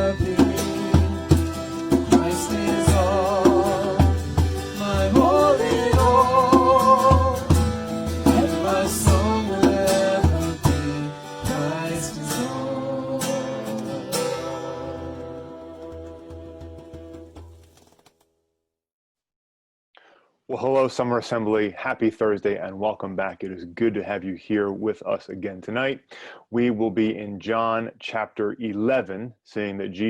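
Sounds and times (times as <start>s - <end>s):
song with singing over guitar: 0.0s - 17.3s.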